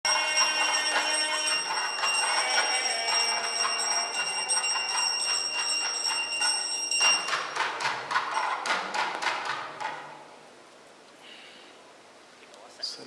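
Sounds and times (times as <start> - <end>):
bells ringing: 0.0 - 9.0.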